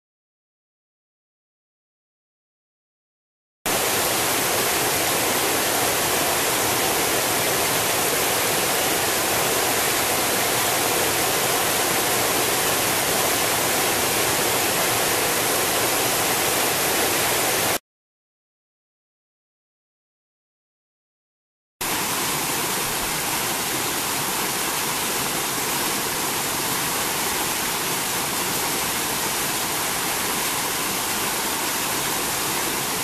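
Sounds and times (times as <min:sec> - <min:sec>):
mountain water rushing: 0:03.7 - 0:17.8, 0:21.8 - 0:33.0.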